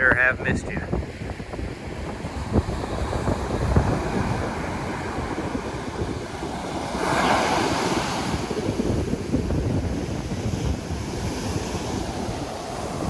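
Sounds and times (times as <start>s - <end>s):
ocean surf: 0.0s - 13.0s
wind buffeting microphone: 0.0s - 13.0s
wave breaking: 2.0s - 13.0s.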